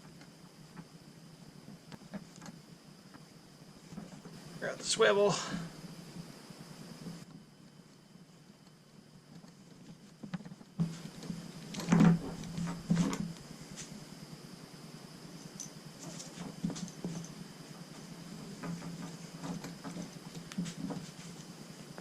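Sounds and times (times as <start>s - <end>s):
rustling: 15.3s - 22.0s.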